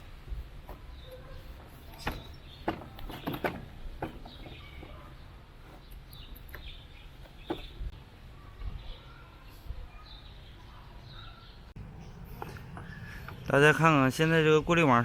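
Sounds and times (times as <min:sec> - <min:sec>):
low steady rumble: 0:11.8 - 0:14.7.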